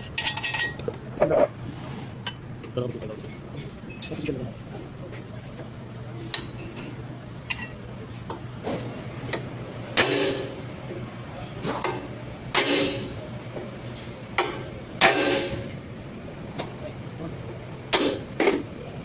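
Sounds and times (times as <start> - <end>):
steady low hum: 0.0 - 19.0
hammer striking metal: 10.0 - 10.6, 11.8 - 13.2, 14.4 - 15.8, 17.9 - 18.6.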